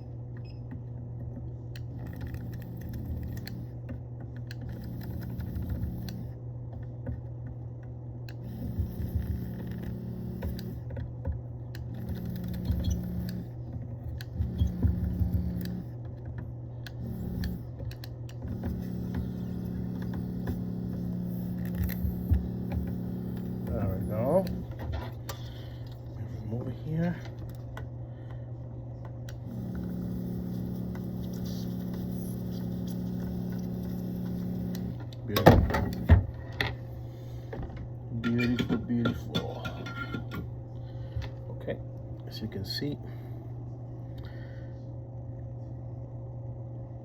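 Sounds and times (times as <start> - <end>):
extractor fan humming: 0.0 - 47.0
desoldering tool switching: 14.1 - 15.9, 16.8 - 26.0.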